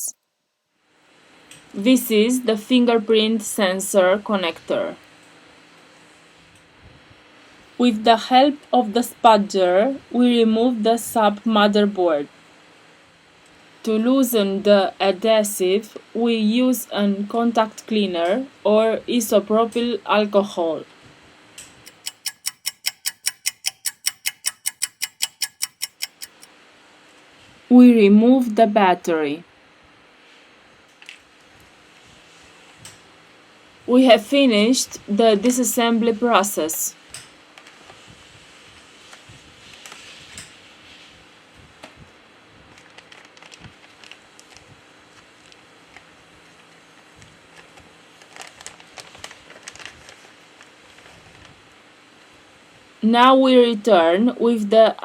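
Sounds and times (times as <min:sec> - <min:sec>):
rapid ticking: 0:21.9 - 0:26.5
faint clicks and crinkling: 0:37.1 - 0:38.2, 0:38.8 - 0:41.1, 0:41.8 - 0:52.3.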